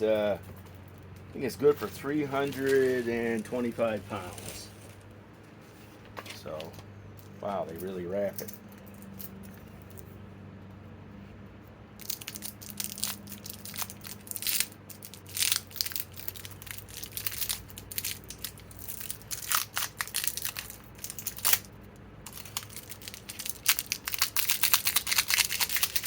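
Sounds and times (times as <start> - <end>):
packaging wrap crinkling: 1.7 - 5.0, 12.0 - 26.0.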